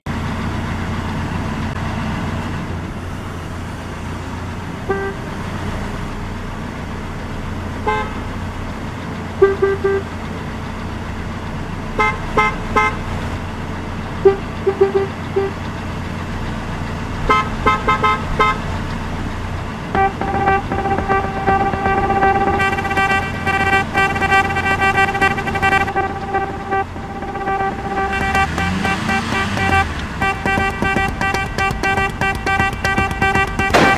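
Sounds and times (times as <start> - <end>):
car horns honking: 4.8 - 5.5, 7.7 - 10.6, 11.9 - 15.8, 17.2 - 18.8, 19.9 - 33.9.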